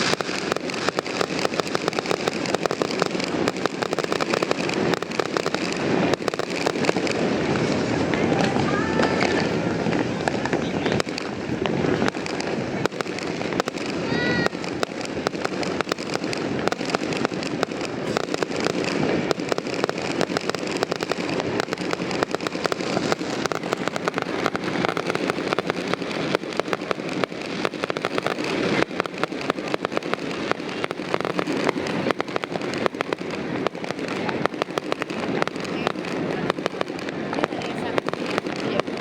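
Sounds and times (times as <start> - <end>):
fireworks bangs and crackles: 0.0 - 39.0.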